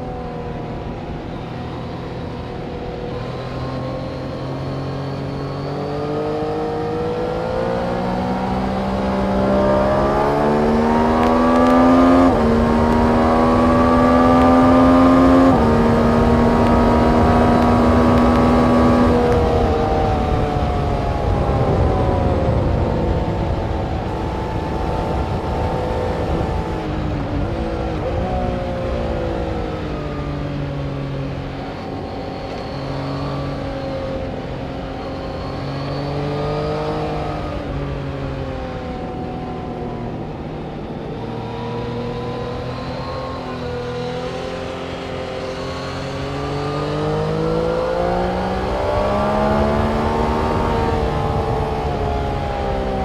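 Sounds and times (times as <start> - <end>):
race car engines accelerating: 0.0 - 53.0.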